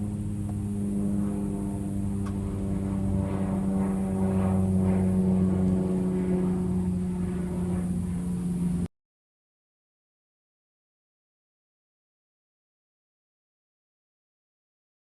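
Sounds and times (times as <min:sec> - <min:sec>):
low mechanical hum: 0:00.0 - 0:08.9.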